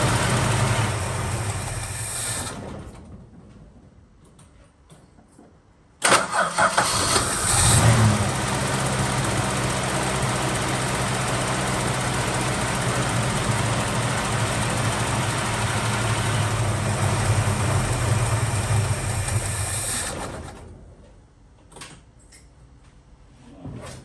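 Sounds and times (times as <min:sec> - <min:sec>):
car engine idling: 0:00.0 - 0:02.2, 0:06.6 - 0:20.6.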